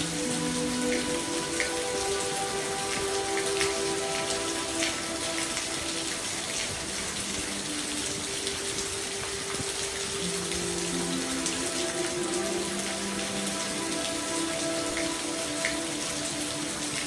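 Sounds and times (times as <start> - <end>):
raindrops ticking on a surface: 0.0 - 17.0
soft music of held notes: 0.0 - 17.0
steady rain: 0.0 - 17.0.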